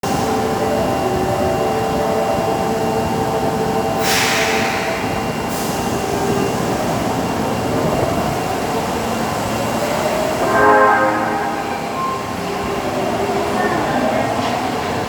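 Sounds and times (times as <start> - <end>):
subway train electrical hum: 0.0 - 15.0
compressed-air hiss: 4.0 - 5.8.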